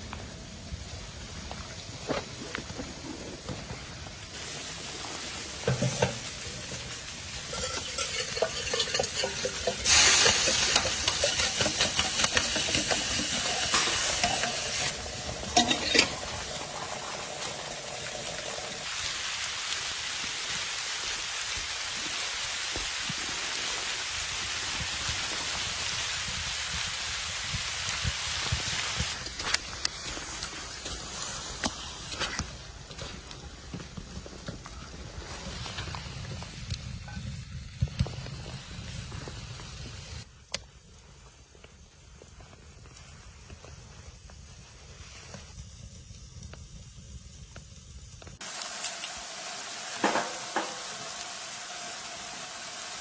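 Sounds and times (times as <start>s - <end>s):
food sizzling in a hot pan: 4.4s - 29.3s, 43.0s - 53.0s.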